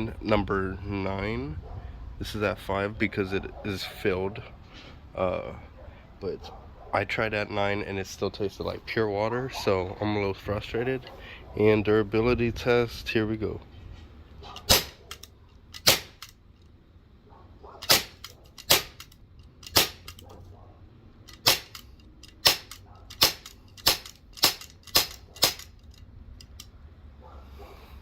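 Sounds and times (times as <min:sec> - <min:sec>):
airsoft pistol shots: 0:14.6 - 0:15.2, 0:15.8 - 0:16.3, 0:17.8 - 0:19.1, 0:19.7 - 0:20.2, 0:21.3 - 0:25.7.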